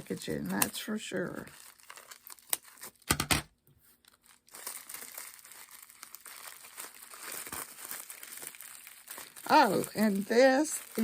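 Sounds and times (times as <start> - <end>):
plastic packing crinkling: 0.0 - 11.0.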